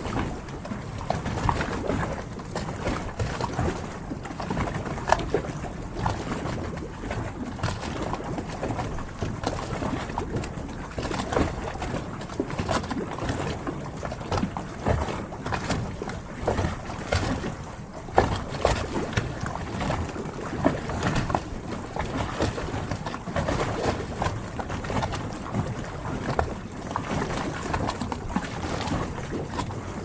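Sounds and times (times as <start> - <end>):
water lapping against hulls: 0.0 - 30.0
hollow slaps on hulls: 14.1 - 30.0.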